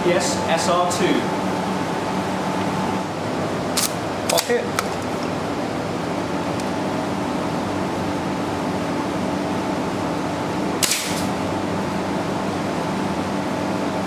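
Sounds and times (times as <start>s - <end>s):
steady mechanical hum: 0.0s - 14.0s
airsoft rifle shot: 10.8s - 11.3s.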